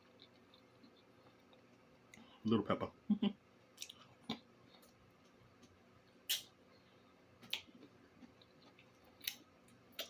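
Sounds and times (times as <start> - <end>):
wet mouth clicks chewing: 3.8 - 6.5.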